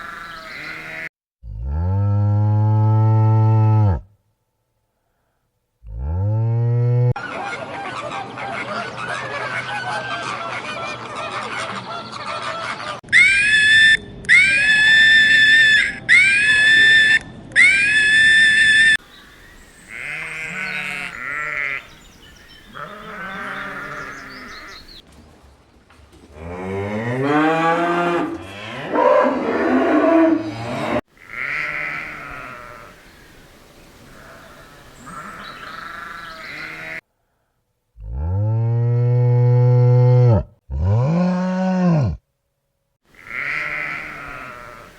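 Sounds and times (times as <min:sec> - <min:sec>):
loud high-pitched calls: 0:13.1 - 0:19.0
sheep and goats bleating: 0:19.9 - 0:22.0, 0:22.7 - 0:24.8, 0:31.2 - 0:32.9, 0:34.2 - 0:37.0, 0:43.2 - 0:44.9.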